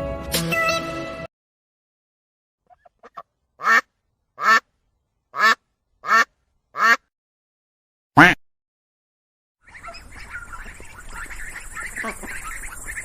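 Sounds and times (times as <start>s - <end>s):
duck quacking: 2.7s - 4.7s, 5.3s - 7.1s, 8.2s - 8.4s, 9.6s - 13.0s.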